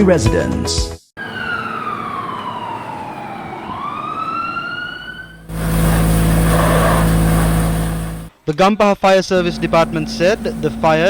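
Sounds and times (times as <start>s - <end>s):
fire truck siren wailing: 1.2s - 8.3s.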